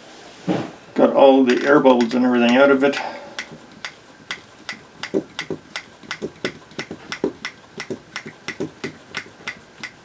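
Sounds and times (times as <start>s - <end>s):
syringe clicking: 1.5s - 10.0s
dull knocks: 5.0s - 9.6s.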